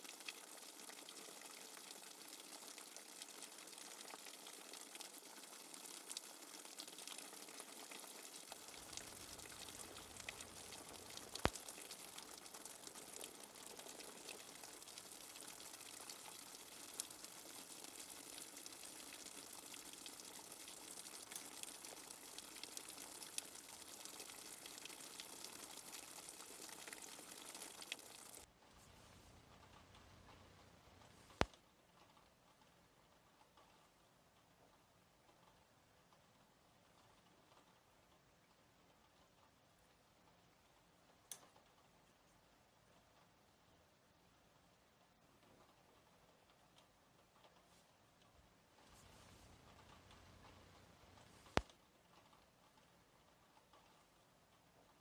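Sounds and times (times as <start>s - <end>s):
steady rain falling: 0.0s - 31.5s, 48.8s - 51.7s.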